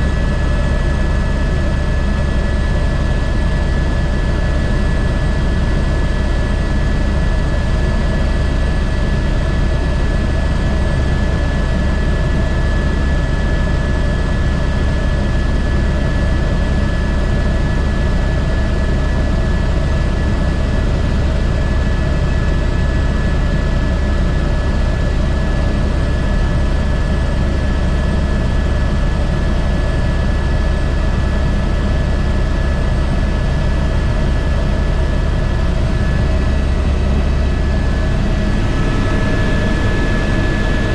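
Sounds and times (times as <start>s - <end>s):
helicopter rotor rumble: 0.0s - 40.9s
turbine whine: 21.6s - 40.9s.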